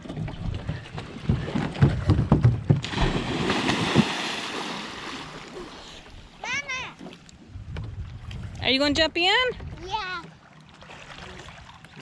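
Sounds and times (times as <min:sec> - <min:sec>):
person splashing into water: 0:02.8 - 0:05.8.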